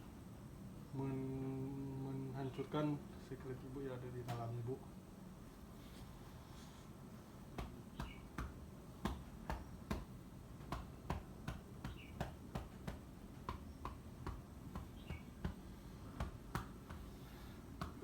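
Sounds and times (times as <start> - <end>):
hand patting on back: 7.5 - 18.0.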